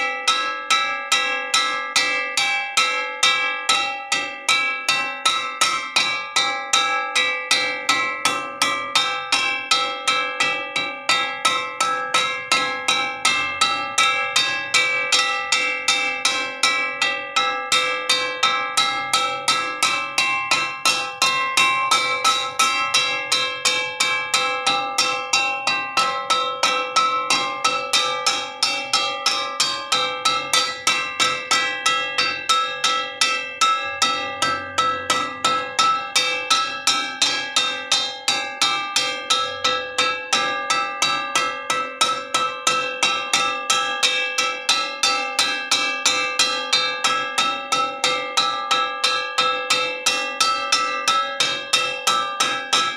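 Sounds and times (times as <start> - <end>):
metal wok clanging: 17.8 - 48.0.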